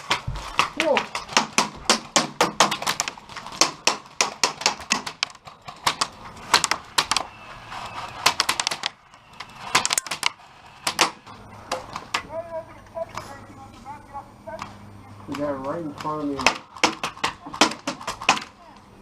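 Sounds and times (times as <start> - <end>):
airsoft guns firing: 0.0 - 7.4, 8.2 - 12.3, 15.3 - 18.7.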